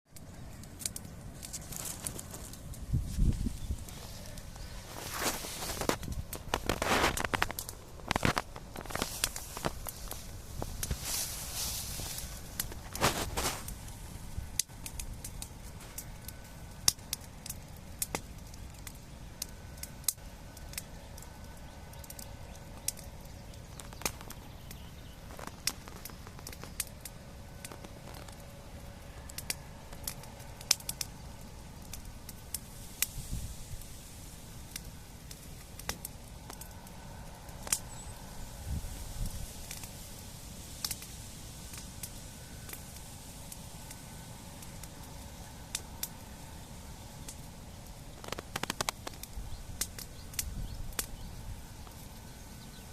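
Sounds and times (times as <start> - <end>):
bonfire crackling: 0.1 - 52.9
low steady rumble: 0.1 - 52.9
sharp pops: 48.1 - 51.1.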